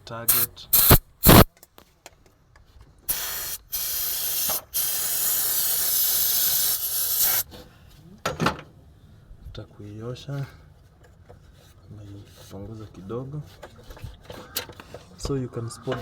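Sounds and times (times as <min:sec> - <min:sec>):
aerosol spray hissing: 0:00.3 - 0:01.5, 0:03.1 - 0:07.4.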